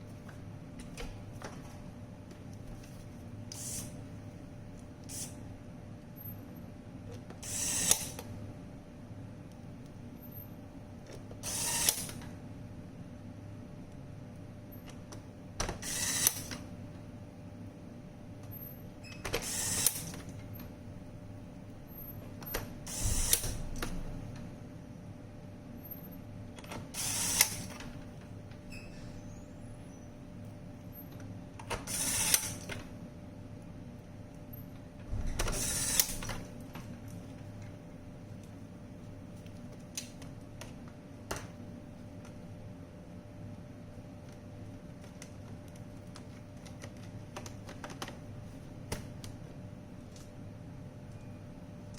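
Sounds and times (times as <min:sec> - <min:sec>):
low steady hum: 0:00.0 - 0:51.9
mechanical rasping bursts: 0:35.5 - 0:36.3.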